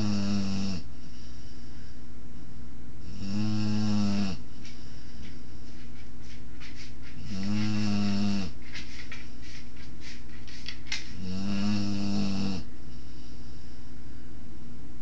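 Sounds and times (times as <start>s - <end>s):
puppy snoring: 0.0s - 1.0s, 3.0s - 4.5s, 7.2s - 8.6s, 11.1s - 12.7s
faint crackly breathing: 4.3s - 14.2s.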